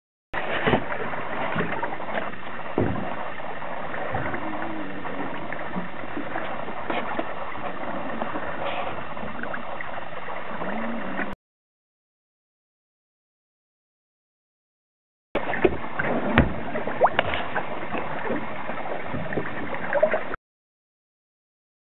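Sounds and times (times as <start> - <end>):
boat rushing over water: 0.4 - 11.4, 15.4 - 20.4.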